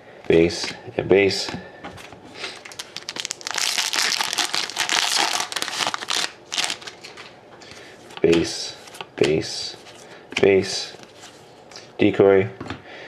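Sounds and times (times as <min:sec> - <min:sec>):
plastic wrapper crinkling: 0:02.4 - 0:07.4.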